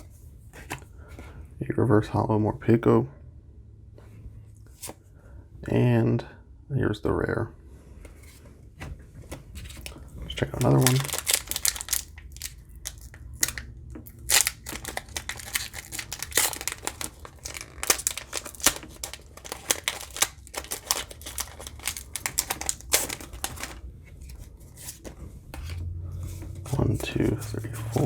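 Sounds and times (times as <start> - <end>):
foil wrapper crinkling and tearing: 9.7 - 25.0.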